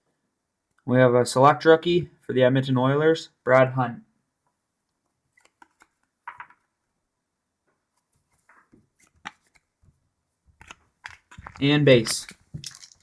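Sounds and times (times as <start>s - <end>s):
card rustle: 5.4s - 6.5s, 8.0s - 9.7s, 10.6s - 13.0s
cards clicking and sliding: 5.4s - 6.6s, 8.4s - 9.7s, 10.6s - 13.0s.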